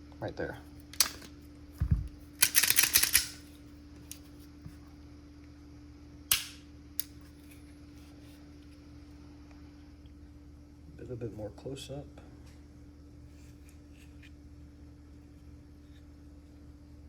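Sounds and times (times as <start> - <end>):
pistol clicks and clacks: 6.3 - 7.1.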